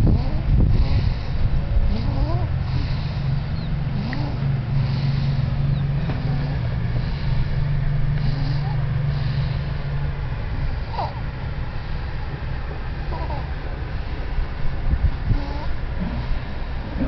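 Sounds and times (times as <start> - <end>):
baby snoring loudly: 0.0 - 3.2, 3.9 - 5.4, 10.8 - 11.2, 13.1 - 13.5, 15.3 - 15.8.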